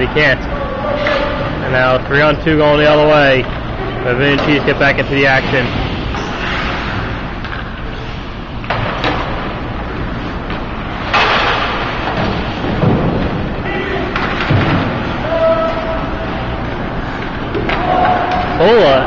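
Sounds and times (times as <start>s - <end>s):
arena noise: 0.0s - 19.0s
puck and sticks hitting boards: 3.4s - 7.9s, 8.6s - 9.8s, 10.4s - 16.2s, 17.2s - 19.0s.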